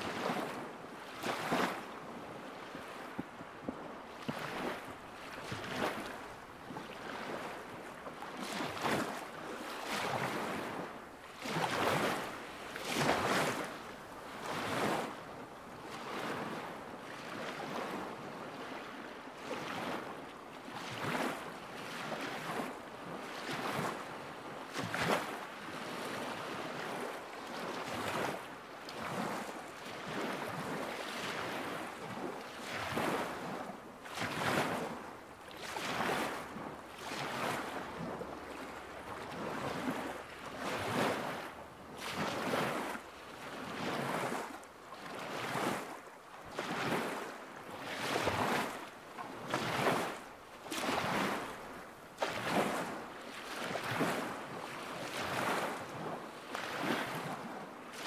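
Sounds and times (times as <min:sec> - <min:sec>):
lake waves lapping at shore: 0:00.0 - 0:58.0.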